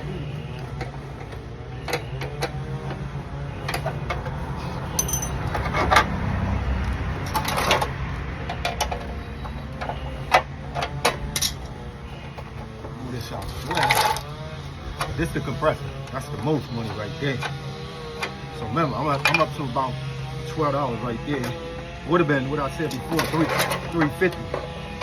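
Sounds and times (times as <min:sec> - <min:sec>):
hand tools clinking on metal: 0:00.0 - 0:25.0
steady low hum: 0:00.0 - 0:25.0.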